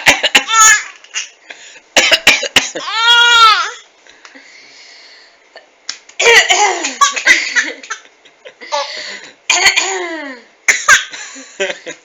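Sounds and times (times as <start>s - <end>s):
baby laughing: 0.0s - 1.3s
person coughing: 2.0s - 2.9s, 6.2s - 7.8s, 8.8s - 11.2s.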